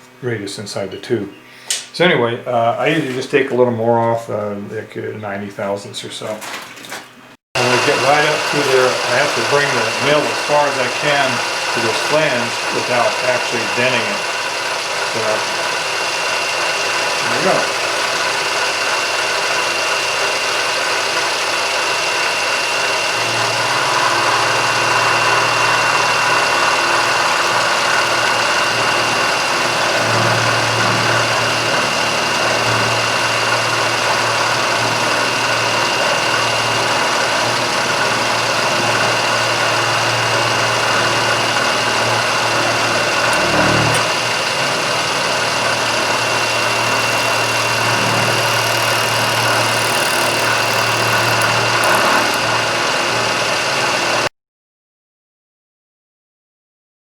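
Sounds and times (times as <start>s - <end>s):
deeper machine hum: 7.6s - 54.0s
milling machine high whine: 7.6s - 54.3s.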